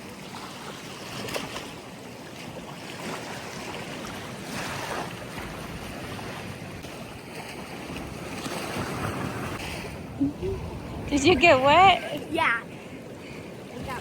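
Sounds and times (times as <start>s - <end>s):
ocean waves washing onto beach: 0.0s - 14.0s
wind on microphone: 4.2s - 14.0s.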